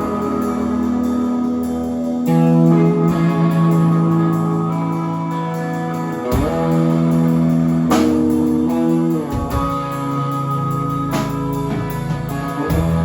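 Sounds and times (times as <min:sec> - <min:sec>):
rock band playing: 0:00.0 - 0:13.0.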